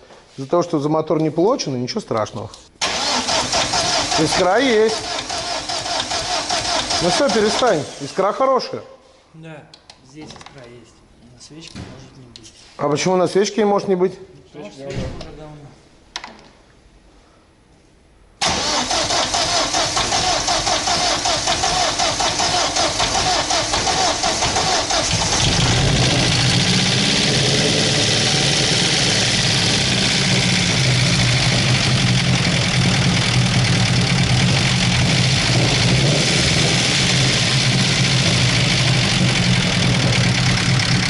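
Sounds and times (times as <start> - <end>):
starter cranking engine: 2.8 - 7.8, 18.4 - 41.0
car engine running: 22.3 - 41.0.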